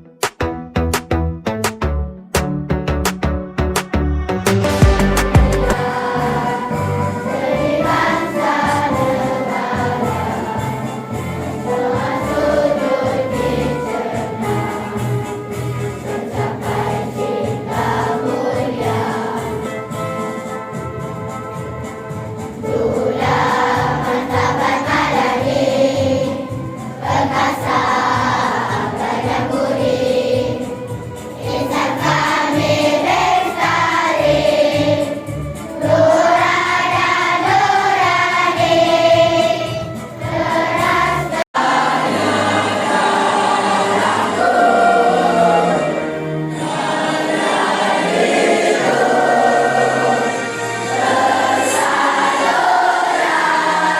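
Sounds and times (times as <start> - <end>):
instrumental backing with beat: 0.0 - 41.4
group of people singing: 5.6 - 20.0, 22.6 - 53.9.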